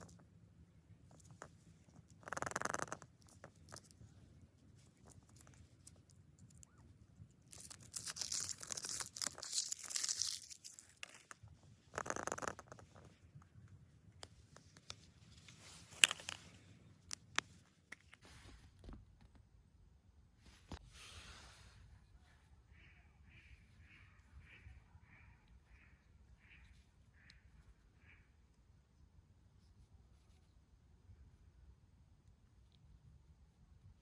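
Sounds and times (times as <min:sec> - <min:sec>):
foil wrapper tearing and crinkling: 0:07.5 - 0:11.3.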